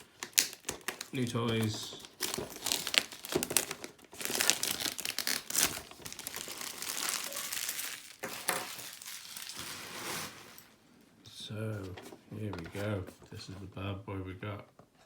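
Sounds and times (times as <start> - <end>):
packaging crinkling and crackling: 0.0 - 10.8.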